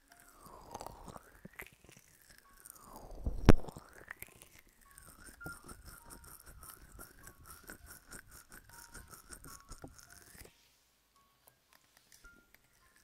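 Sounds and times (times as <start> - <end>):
scratching on a microphone: 2.9 - 3.8, 5.0 - 10.5.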